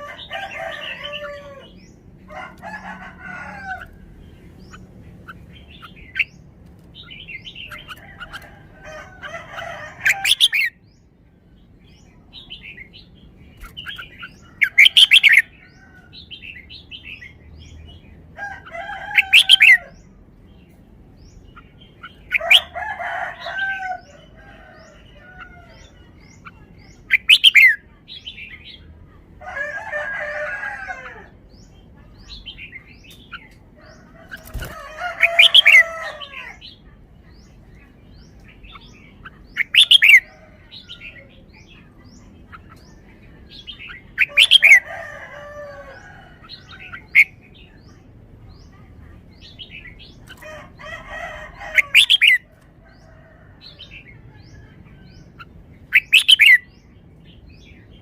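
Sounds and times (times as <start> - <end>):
bird singing warbling phrases: 0.0 - 58.0
low wavering bird calls: 29.5 - 48.0.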